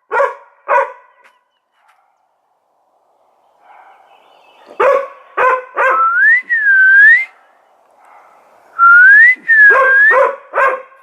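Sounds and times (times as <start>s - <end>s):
dog barking: 0.0s - 2.3s, 3.6s - 6.1s, 8.0s - 8.6s, 9.7s - 11.0s.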